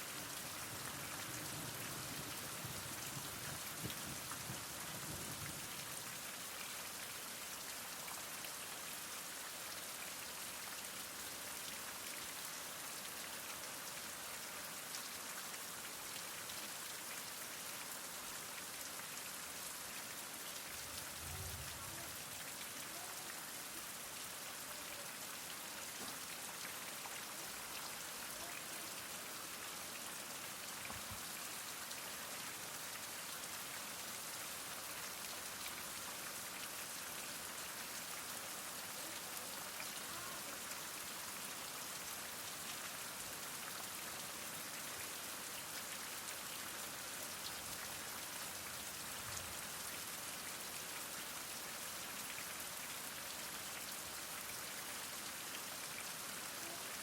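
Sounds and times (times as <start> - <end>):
heavy rain falling: 0.0 - 6.6, 20.1 - 26.9.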